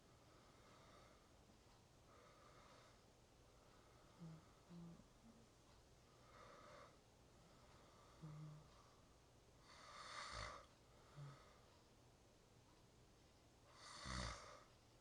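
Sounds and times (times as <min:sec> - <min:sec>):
person snoring quietly: 0:03.8 - 0:05.4, 0:06.2 - 0:08.9, 0:09.6 - 0:11.7, 0:13.7 - 0:14.7.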